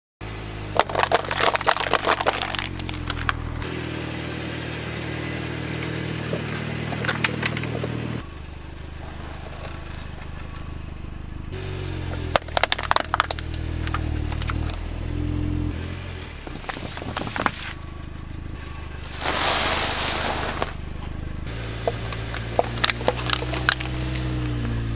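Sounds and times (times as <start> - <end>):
car engine running: 0.2 - 24.9
plastic cracking and crunching: 0.8 - 3.4.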